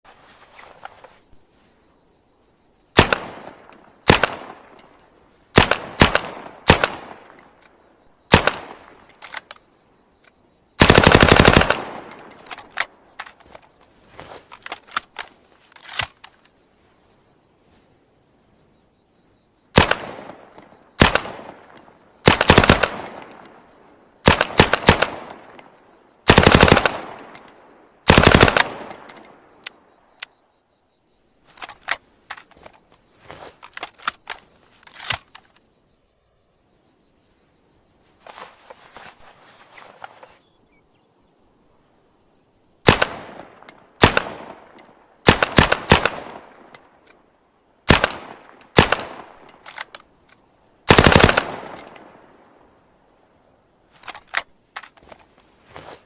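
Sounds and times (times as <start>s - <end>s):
submachine gun bursts: 10.8s - 12.7s, 26.3s - 27.2s, 28.1s - 29.0s, 50.9s - 51.9s.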